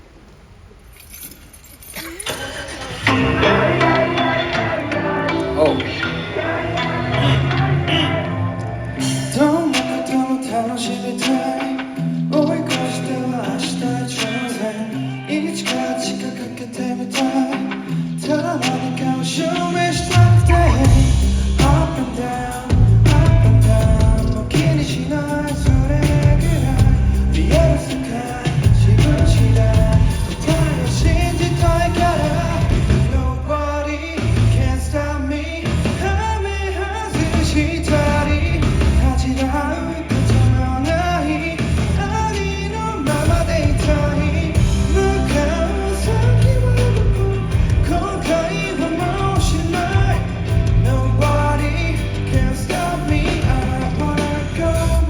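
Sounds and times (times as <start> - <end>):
man singing lead vocal: 2.1 - 55.0
drum kit: 3.0 - 14.9, 17.1 - 33.5, 34.2 - 35.0, 35.6 - 55.0
bass line: 3.1 - 9.8, 19.7 - 55.0.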